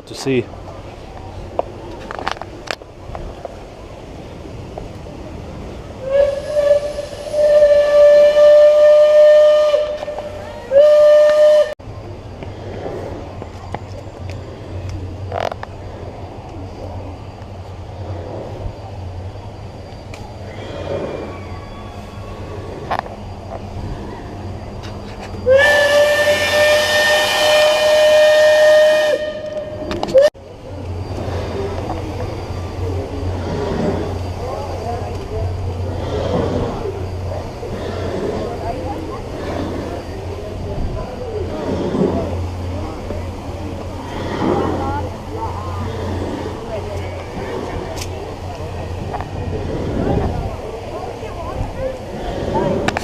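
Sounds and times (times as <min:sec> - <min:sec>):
steam whistle blasts: 0:06.0 - 0:11.8, 0:25.3 - 0:30.3.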